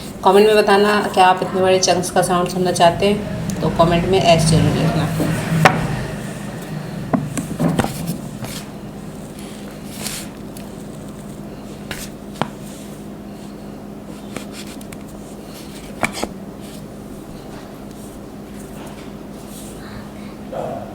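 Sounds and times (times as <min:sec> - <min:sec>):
steady low hum: 0:00.0 - 0:20.9
chalk clay crumbling by hand: 0:07.7 - 0:12.9.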